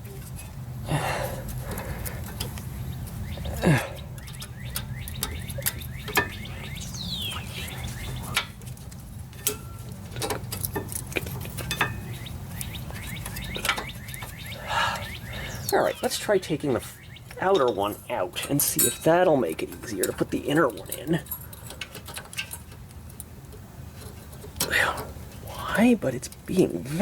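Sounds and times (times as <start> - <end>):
brake pad clicking on metal clips: 1.4 - 15.1.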